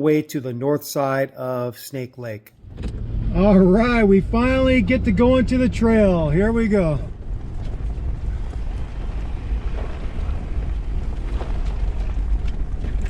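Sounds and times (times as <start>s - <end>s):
vehicle driving on dirt trail: 2.6s - 13.0s.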